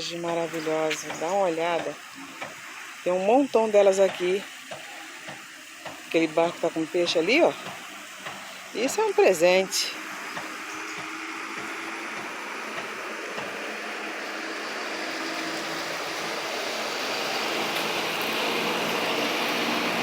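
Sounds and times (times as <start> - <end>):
motor humming: 0.0 - 20.0.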